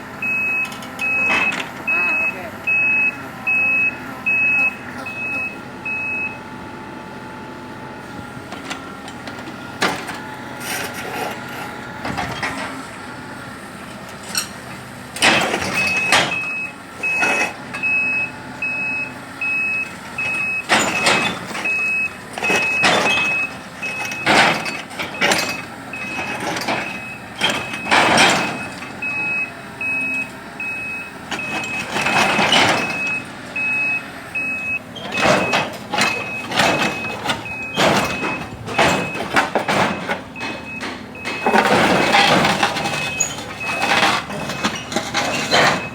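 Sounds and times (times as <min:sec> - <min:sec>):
travel alarm beeping: 0:00.2 - 0:06.5, 0:15.7 - 0:44.1.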